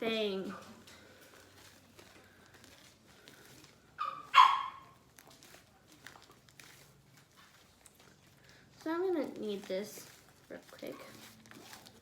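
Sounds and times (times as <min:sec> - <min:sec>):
dog barking: 0:04.0 - 0:04.9.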